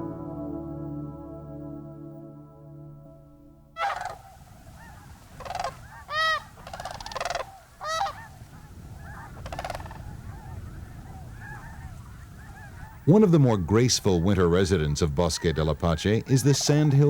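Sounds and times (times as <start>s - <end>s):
loud rolling crane calls: 3.8s - 8.4s, 9.0s - 10.6s
distant chorus of crane calls: 3.8s - 17.0s.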